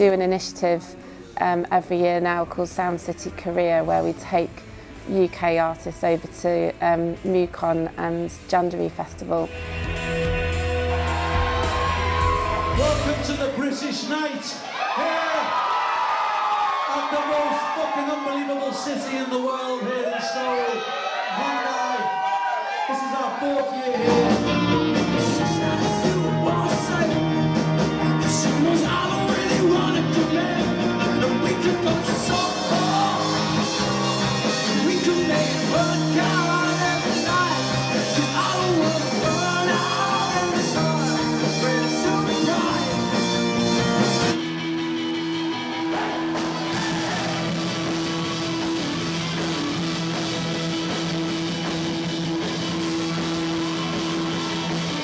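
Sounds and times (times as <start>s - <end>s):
rock music with singer: 9.3s - 13.6s, 23.8s - 55.0s.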